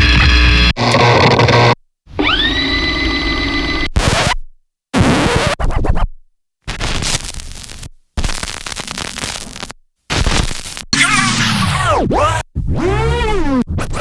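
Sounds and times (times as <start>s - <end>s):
cinematic sound effects: 11.0s - 11.9s.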